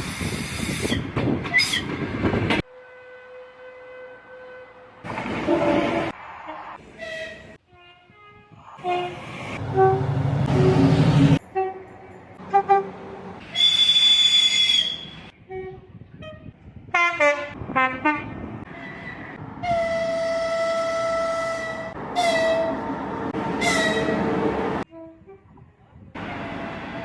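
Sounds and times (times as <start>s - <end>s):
train horn blasts: 2.7s - 4.8s, 7.1s - 14.7s, 15.4s - 18.3s, 19.6s - 25.6s.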